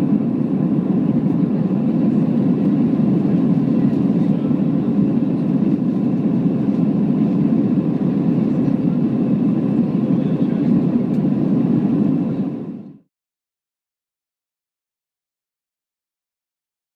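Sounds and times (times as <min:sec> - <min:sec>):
airplane cabin engine drone: 0:00.0 - 0:13.1.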